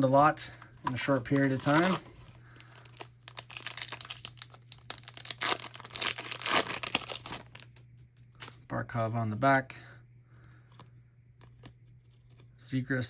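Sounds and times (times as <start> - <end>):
foil wrapper crackling and tearing: 1.3 - 7.8.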